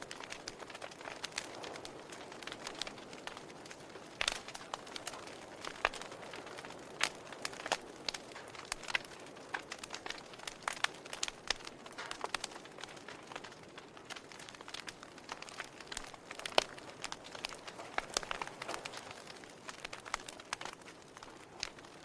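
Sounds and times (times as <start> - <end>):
wood fire crackling: 0.0 - 22.0.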